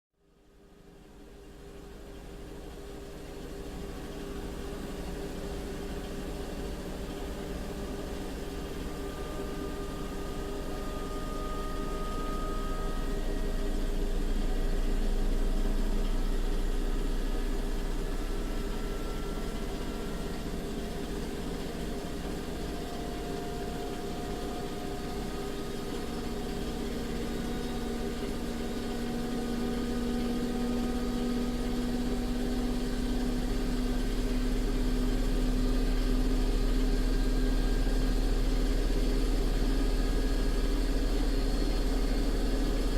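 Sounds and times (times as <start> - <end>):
washing machine spinning: 1.4 - 42.9.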